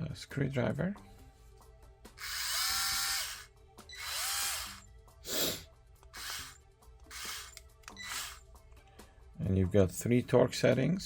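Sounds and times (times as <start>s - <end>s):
cordless screwdriver motor whine: 2.2s - 5.5s, 6.1s - 8.4s.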